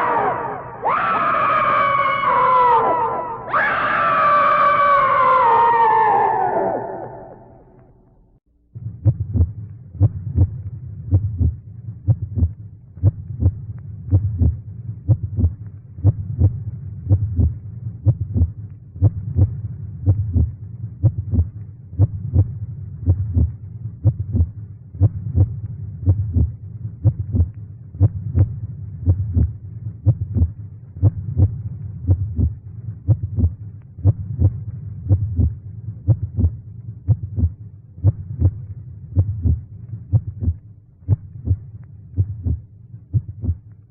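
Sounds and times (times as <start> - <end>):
steady low drone: 6.3 - 43.9
heartbeat thumps: 8.8 - 43.7.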